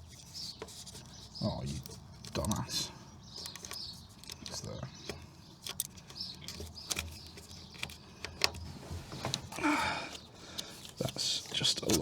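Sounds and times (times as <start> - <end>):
rustling: 5.6 - 12.0.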